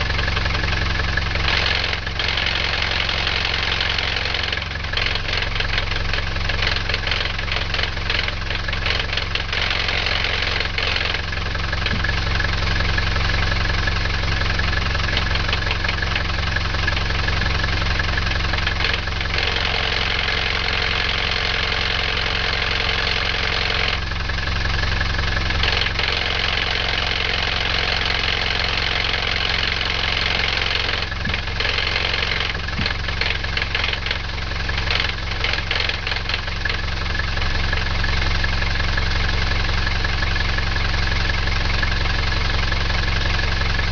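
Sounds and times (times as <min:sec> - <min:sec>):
diesel engine idling: 0:00.0 - 0:43.9
gearbox clattering rattle: 0:30.4 - 0:36.8.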